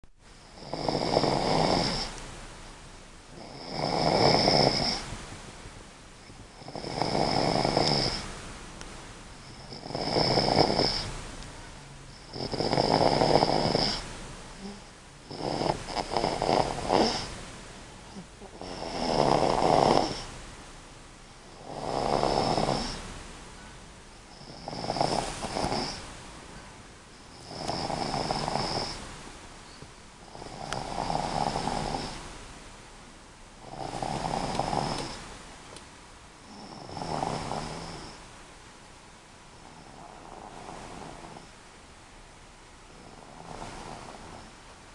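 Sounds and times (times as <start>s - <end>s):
pet snoring with whistle: 0.4s - 2.2s, 3.4s - 5.1s, 6.2s - 8.3s, 9.4s - 11.2s, 12.2s - 17.4s, 18.1s - 20.3s, 21.6s - 23.1s, 24.3s - 26.1s, 27.3s - 29.1s, 30.3s - 32.3s, 33.6s - 35.3s, 36.5s - 38.2s, 39.6s - 41.5s, 42.9s - 44.6s.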